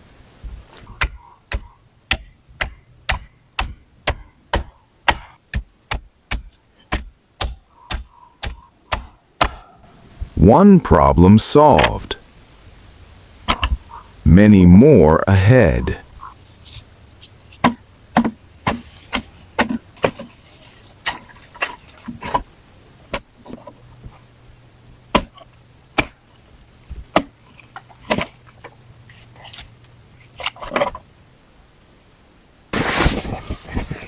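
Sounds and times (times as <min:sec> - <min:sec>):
wood being chopped: 0:00.8 - 0:09.7, 0:11.8 - 0:12.1, 0:13.4 - 0:13.9, 0:17.6 - 0:22.5, 0:23.1 - 0:24.3, 0:25.1 - 0:31.0.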